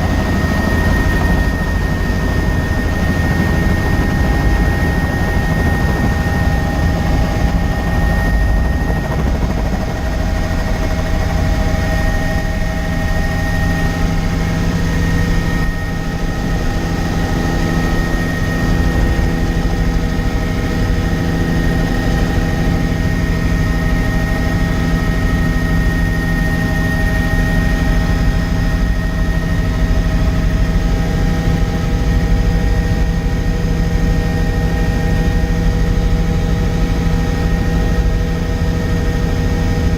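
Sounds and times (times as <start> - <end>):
high-pitched whine: 0.0 - 29.9
helicopter rotor and engine drone: 0.0 - 39.9.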